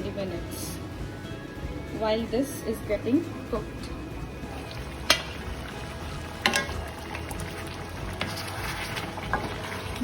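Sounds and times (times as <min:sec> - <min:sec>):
food sizzling in a pan: 0:04.5 - 0:10.0
utensil clinking on pan: 0:06.4 - 0:06.8.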